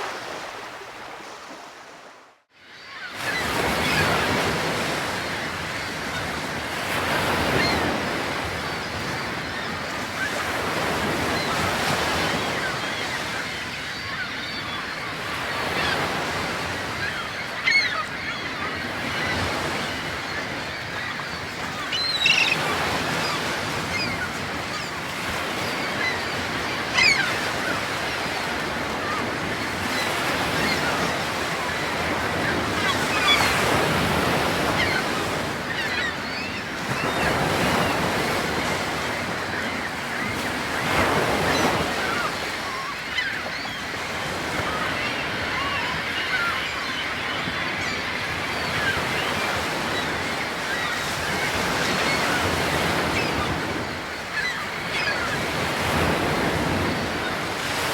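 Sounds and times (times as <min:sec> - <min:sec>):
sea surf: 0:00.0 - 0:57.9
wind: 0:00.0 - 0:57.9.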